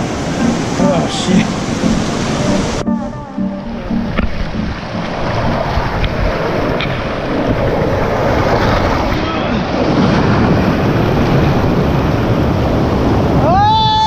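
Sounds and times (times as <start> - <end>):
wind buffeting microphone: 0.0 - 14.0
rushing creek water splashing: 3.9 - 13.4.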